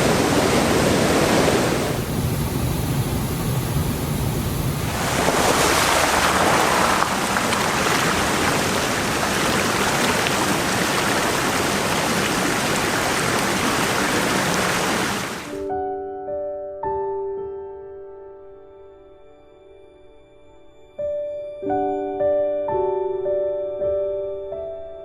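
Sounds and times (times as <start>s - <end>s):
water rushing over waterfalls: 0.0s - 2.2s, 4.7s - 15.6s.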